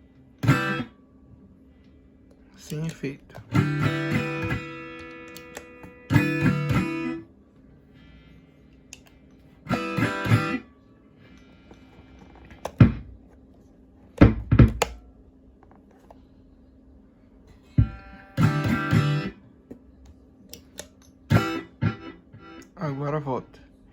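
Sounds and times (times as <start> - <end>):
strummed guitar chords: 0.4 - 0.9, 3.4 - 7.2, 9.6 - 10.7, 17.7 - 19.4, 21.3 - 23.1.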